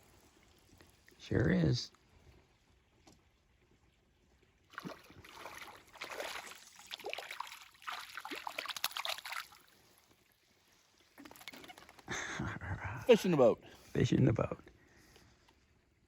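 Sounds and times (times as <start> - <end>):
water splashing beside a boat: 4.7 - 10.4.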